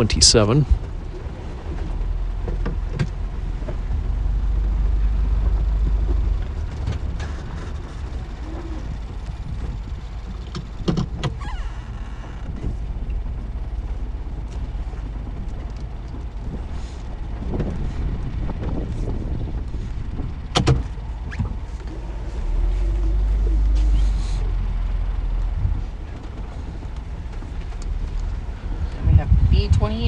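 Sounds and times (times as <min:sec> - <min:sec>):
van engine and tyres rumbling: 0:00.0 - 0:30.0
sharp knocks and rattles: 0:05.2 - 0:22.1.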